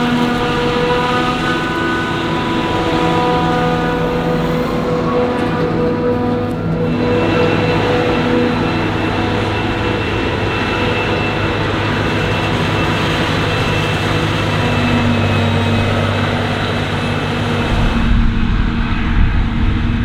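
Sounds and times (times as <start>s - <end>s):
diesel farm machinery running: 0.0s - 20.0s.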